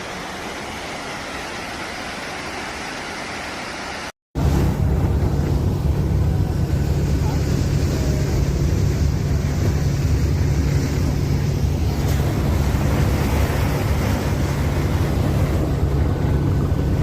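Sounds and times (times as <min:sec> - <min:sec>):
engine running: 0:04.4 - 0:17.0
wind noise: 0:04.4 - 0:17.0.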